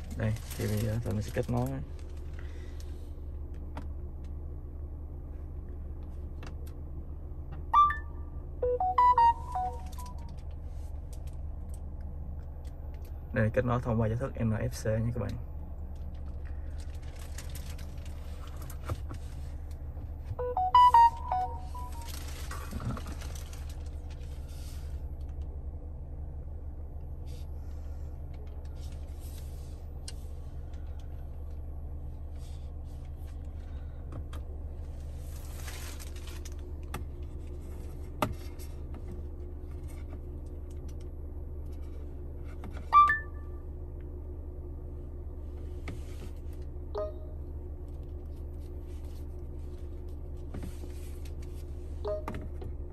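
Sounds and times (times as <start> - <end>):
car cabin hum: 0.0 - 52.9
electronic chime tones: 7.8 - 10.1, 20.4 - 22.1
electronic beep: 7.8 - 10.2, 20.4 - 22.1, 43.0 - 43.4.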